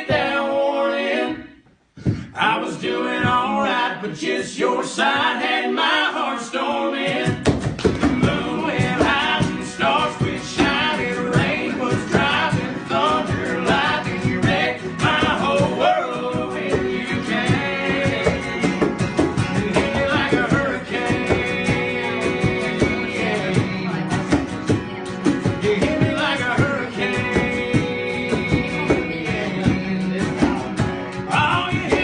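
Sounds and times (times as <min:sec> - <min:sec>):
live country band: 0:02.0 - 0:32.0
man singing: 0:08.0 - 0:24.4, 0:25.4 - 0:32.0.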